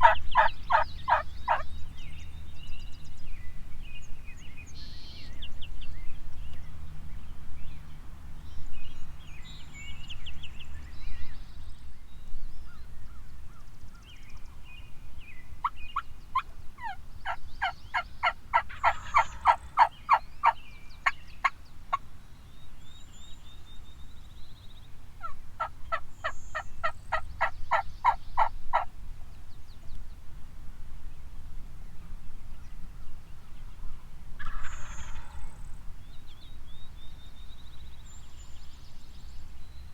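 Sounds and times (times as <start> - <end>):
wild turkey yelping: 0.0 - 1.6, 17.9 - 20.6, 25.2 - 28.9, 34.4 - 35.5.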